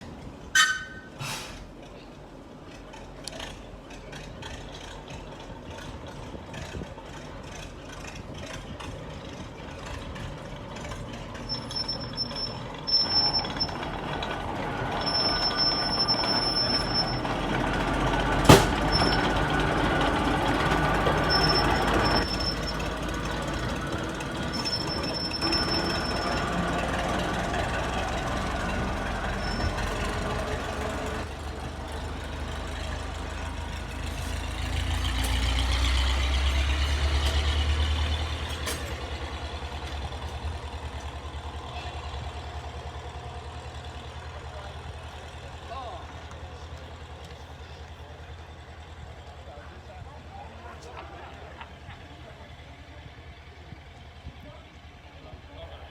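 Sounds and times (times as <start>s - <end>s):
wheels squealing: 0.0s - 55.0s
diesel locomotive engine: 0.0s - 55.9s
sharp metal clank: 18.5s - 19.2s.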